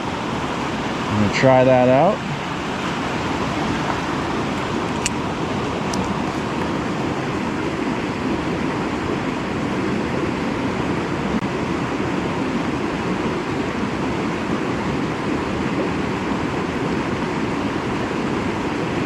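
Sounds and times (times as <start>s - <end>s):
waterfall rushing: 0.0s - 9.7s.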